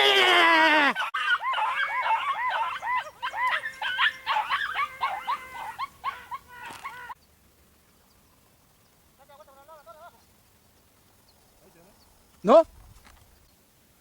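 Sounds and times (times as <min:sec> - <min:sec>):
dogs yipping: 0:00.9 - 0:07.2.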